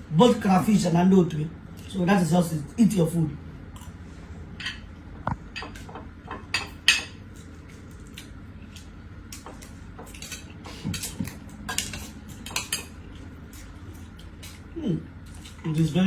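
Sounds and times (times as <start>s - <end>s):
spoons scraping and clinking on plates: 10.0s - 13.7s.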